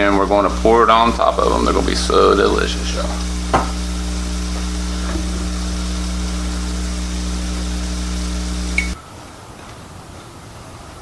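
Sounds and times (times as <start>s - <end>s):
low electrical hum: 0.0s - 9.0s
patties sizzling in a pan: 0.0s - 9.0s
brief knock: 3.5s - 3.8s.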